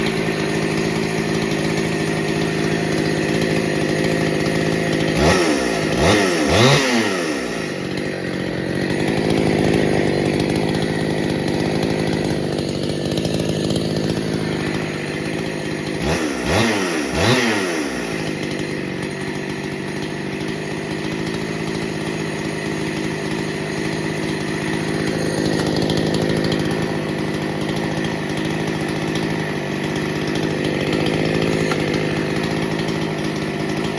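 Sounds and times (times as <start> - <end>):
chainsaw idling and revving: 0.0 - 33.9.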